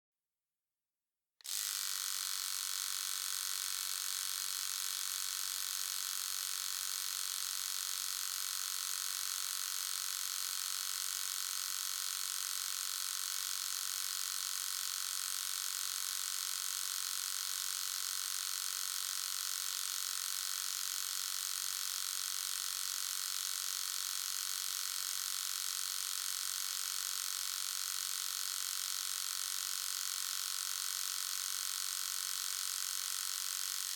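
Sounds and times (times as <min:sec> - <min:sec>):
electric shaver buzzing: 0:01.4 - 0:33.9.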